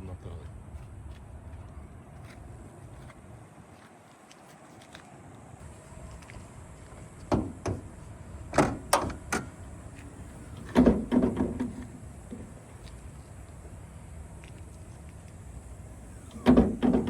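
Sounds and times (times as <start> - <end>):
sharp metal clunks: 7.3 - 7.8, 8.6 - 9.6, 10.6 - 11.9, 16.4 - 17.0
car hood thud with ring: 10.7 - 11.9, 16.4 - 17.0.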